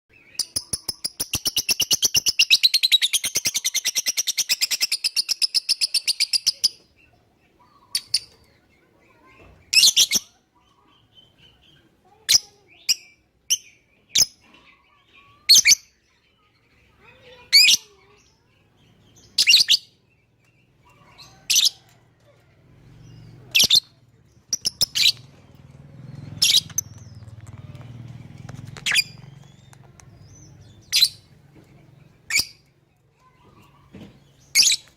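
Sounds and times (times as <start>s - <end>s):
high-pitched bird chirps: 0.1s - 22.0s, 22.9s - 34.9s
bird chattering trill: 0.2s - 6.8s, 23.2s - 25.5s, 26.2s - 27.6s, 28.3s - 31.4s.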